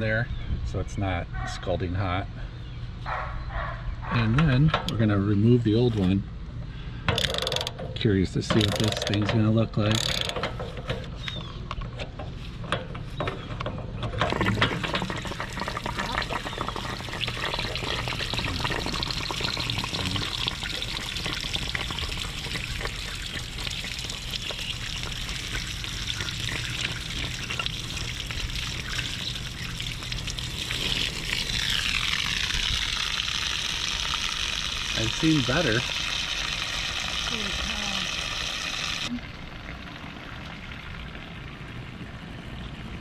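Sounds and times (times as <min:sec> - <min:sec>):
socket wrench ratcheting: 0:07.1 - 0:07.8, 0:08.5 - 0:10.7
water gushing from tank: 0:14.1 - 0:43.0.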